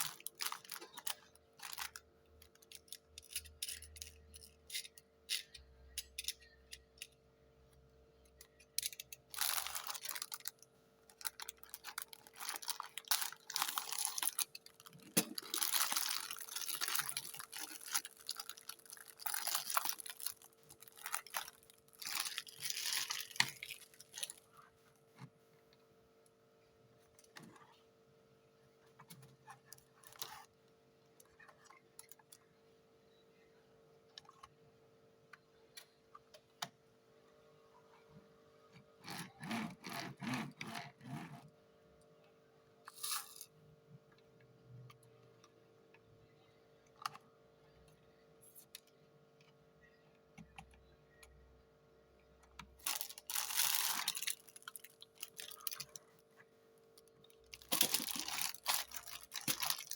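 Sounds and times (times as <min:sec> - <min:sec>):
plastic and cardboard rustling: 0:09.3 - 0:24.5, 0:52.8 - 0:56.0, 0:57.5 - 0:59.9.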